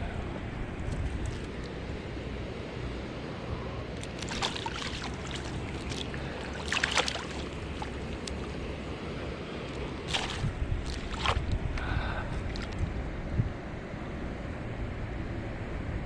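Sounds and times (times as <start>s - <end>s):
running river water: 0.0s - 13.2s
water splashes: 4.0s - 13.0s.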